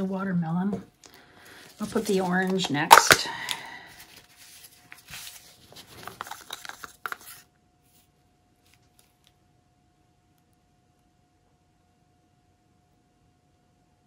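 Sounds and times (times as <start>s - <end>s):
paint containers clicking and rubbing: 1.7s - 7.4s.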